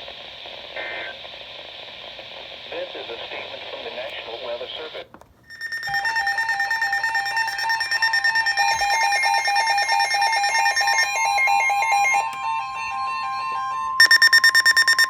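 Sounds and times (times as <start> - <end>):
steady warning tone: 5.4 - 15.0
alternating two-note alert beeping: 5.5 - 15.0.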